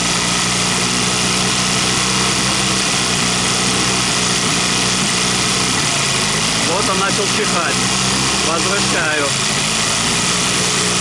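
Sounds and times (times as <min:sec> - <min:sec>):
engine misfiring: 0:00.0 - 0:11.0
outboard motor fast idling: 0:00.0 - 0:11.0.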